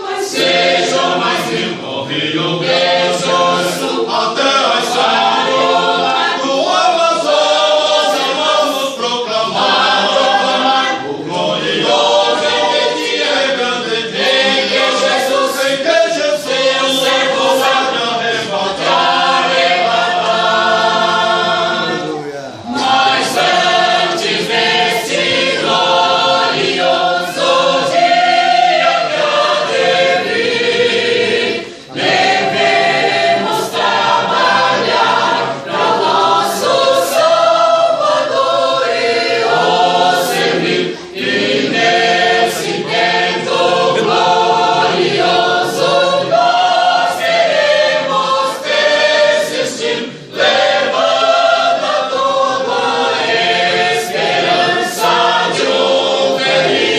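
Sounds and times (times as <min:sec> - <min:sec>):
choir singing a hymn: 0:00.0 - 0:56.9.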